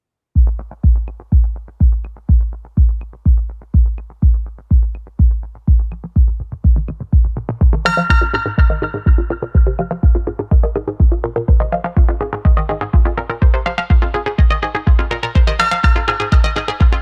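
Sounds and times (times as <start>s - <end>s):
heavy drum machine kick: 0.4s - 17.0s
synthesizer chord: 7.8s - 17.0s.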